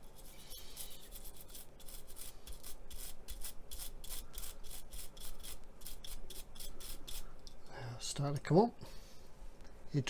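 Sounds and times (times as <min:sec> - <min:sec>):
tool scratching paint on plastic: 0:00.0 - 0:07.3.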